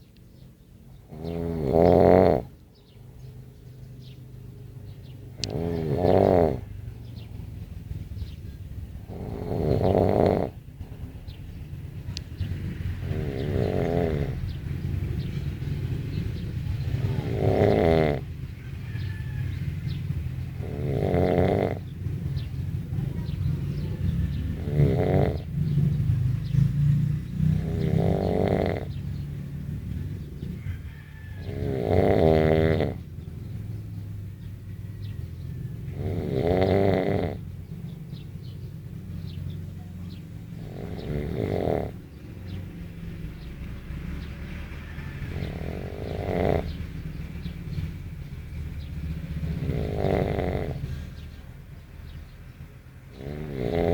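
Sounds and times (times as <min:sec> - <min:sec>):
loud snoring: 0:01.0 - 0:02.6, 0:05.3 - 0:11.1, 0:12.0 - 0:33.9, 0:34.5 - 0:53.9
steady low rumble: 0:04.2 - 0:31.6.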